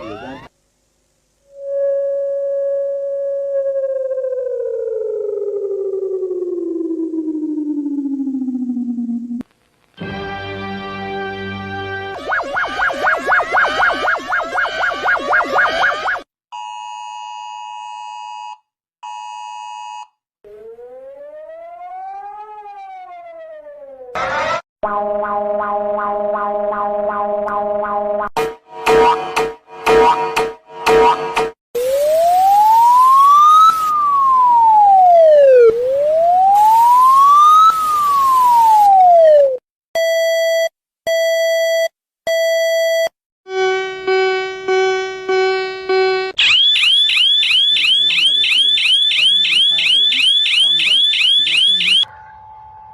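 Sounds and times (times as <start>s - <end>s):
siren tone rising and falling: 0.0s - 0.5s, 1.4s - 9.4s, 12.1s - 16.3s, 19.9s - 28.3s, 28.9s - 39.6s, 43.5s - 52.9s
low buzzy pulsing alarm tone: 24.8s - 28.1s, 43.5s - 52.0s.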